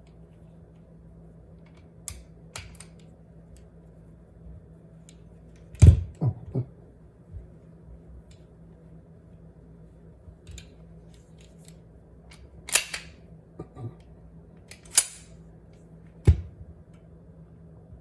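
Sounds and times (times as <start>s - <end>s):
small metal clicks: 10.5s - 13.2s, 14.6s - 15.4s.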